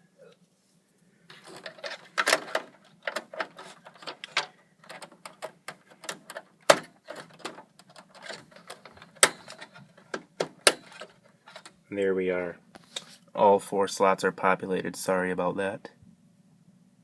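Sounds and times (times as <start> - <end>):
plastic clicking and rattling: 1.3 - 11.8.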